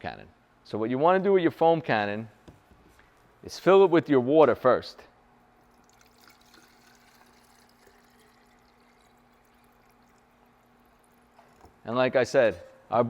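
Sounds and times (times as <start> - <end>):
faint steady hum: 0.0 - 13.0
water pouring into a bottle: 5.6 - 11.8.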